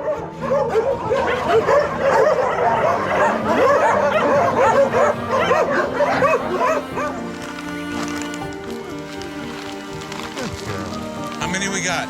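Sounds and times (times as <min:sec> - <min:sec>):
puppies yipping and whimpering: 0:00.0 - 0:08.2.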